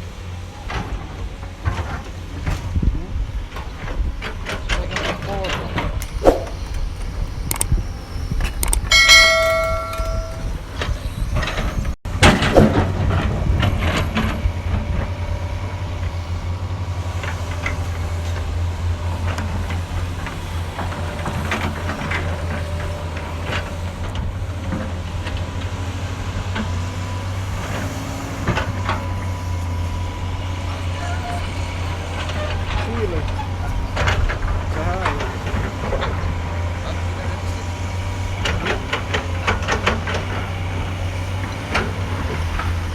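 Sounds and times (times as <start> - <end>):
excavator diesel engine running: 0.0 - 42.9
machine clanks and knocks: 8.6 - 14.4
brief metallic ringing: 8.9 - 10.7.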